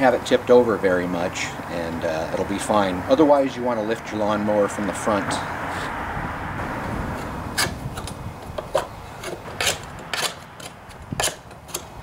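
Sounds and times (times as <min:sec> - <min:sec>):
scraping grass off steel deck: 0:05.6 - 0:06.0, 0:06.8 - 0:12.0.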